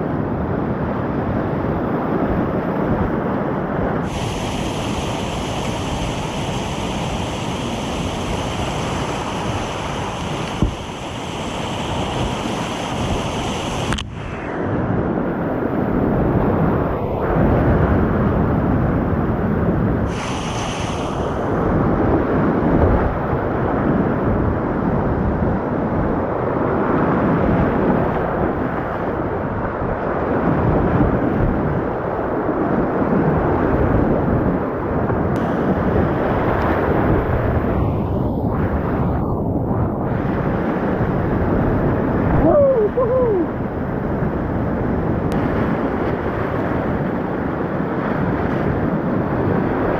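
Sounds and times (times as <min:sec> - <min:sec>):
whitewater rapids rushing: 0:04.1 - 0:14.3.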